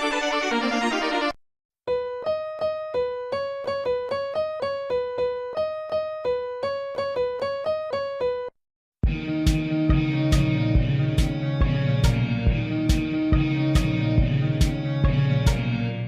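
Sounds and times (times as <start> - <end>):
music with strong beats: 9.0 - 15.8.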